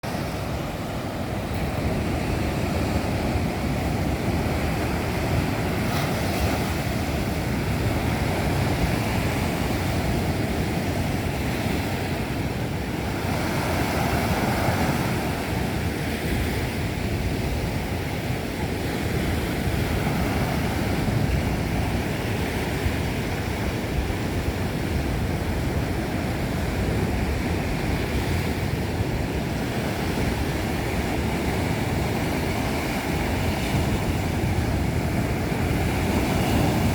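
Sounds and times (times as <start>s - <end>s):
waves breaking on a beach: 0.0s - 36.9s.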